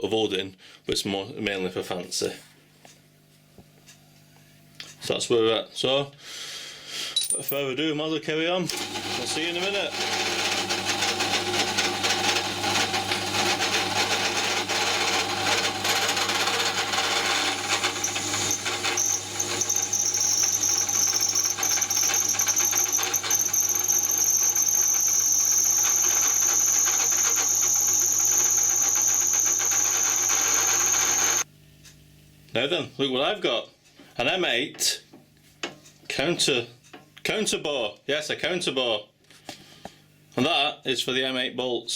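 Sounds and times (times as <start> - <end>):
drill cutting into metal: 8.7 - 31.4
high-pitched cutter squeal: 8.7 - 31.4
crackling metal chips: 8.8 - 31.4.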